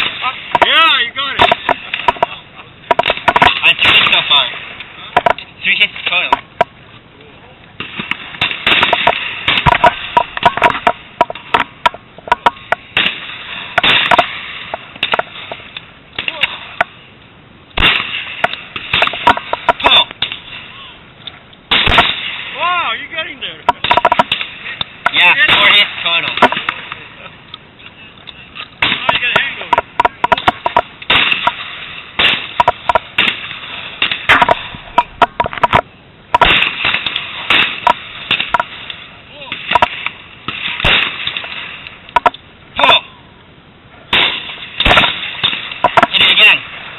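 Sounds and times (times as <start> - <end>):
sharp metallic clicks and knocks: 1.4 - 4.3, 5.1 - 6.8, 7.8 - 13.2, 13.8 - 17.0, 17.7 - 20.5, 23.6 - 27.6, 28.2 - 31.6, 32.2 - 43.0, 44.1 - 46.4
bursts of rushing noise: 28.8 - 42.8.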